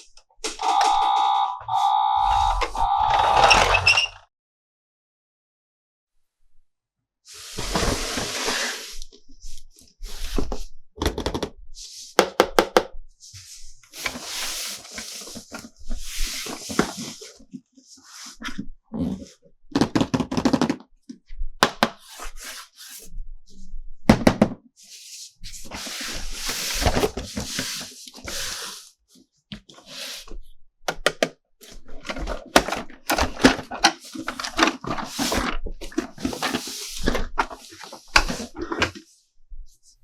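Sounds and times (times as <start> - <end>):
packaging rustling and crinkling: 31.6 - 39.1.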